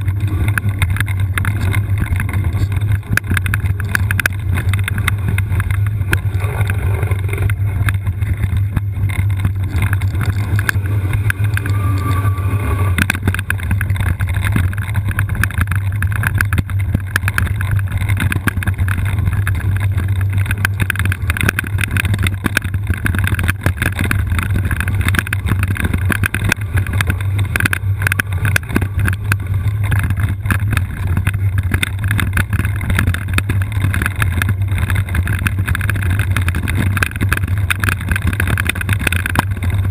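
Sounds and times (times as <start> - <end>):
wheelchair rolling rumble: 0.0 - 39.9.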